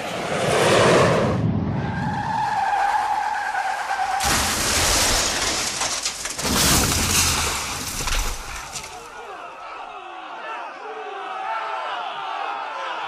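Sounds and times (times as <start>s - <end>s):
car tyres skidding: 0.0s - 9.2s
loud noisy burst: 4.2s - 8.6s.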